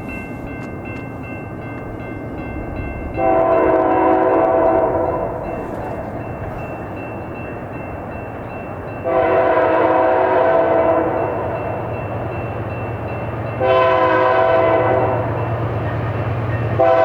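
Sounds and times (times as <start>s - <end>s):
train rumble: 0.0s - 17.0s
locomotive air horn blast: 3.2s - 5.4s, 9.0s - 11.2s, 13.6s - 15.3s, 16.8s - 17.0s.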